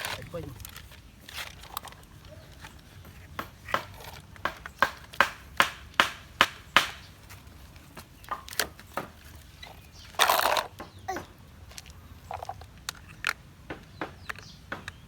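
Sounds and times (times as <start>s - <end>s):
toy pieces knocking together: 10.1s - 15.0s.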